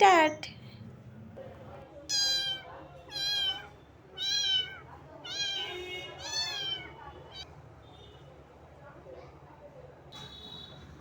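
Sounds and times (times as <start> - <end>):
kitten meowing: 2.1 - 6.9.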